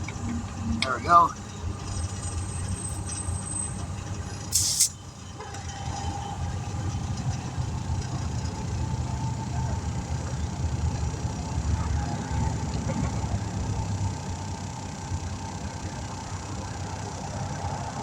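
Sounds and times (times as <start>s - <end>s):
faint steady whine: 0.0s - 12.7s
vehicle engine running: 0.0s - 18.0s
sharp hiss of air: 4.5s - 5.0s.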